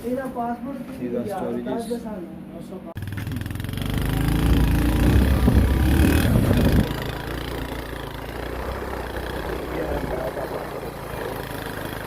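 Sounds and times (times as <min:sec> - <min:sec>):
vehicle engine running: 0:03.0 - 0:12.0.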